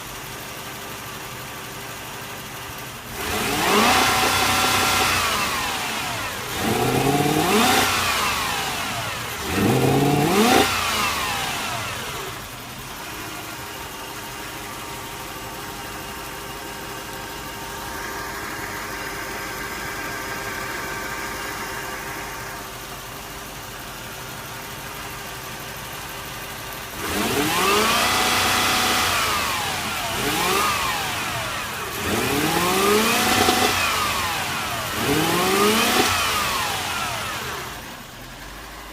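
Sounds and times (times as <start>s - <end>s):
engine idling roughly and revving: 0.0s - 38.9s.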